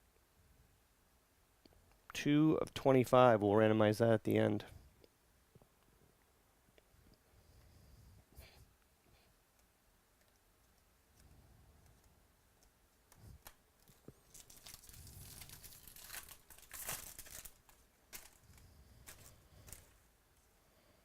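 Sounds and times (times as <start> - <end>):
foil wrapper tearing and crinkling: 13.4 - 18.5.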